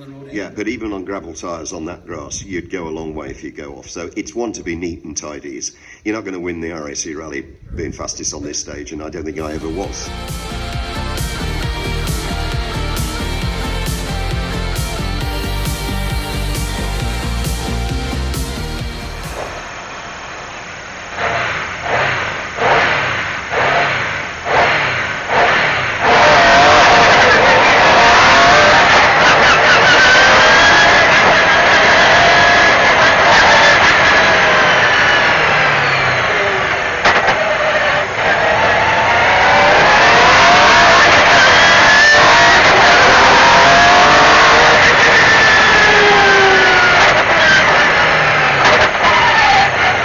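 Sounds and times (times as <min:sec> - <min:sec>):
rally car engine revving hard: 0:21.2 - 0:50.0.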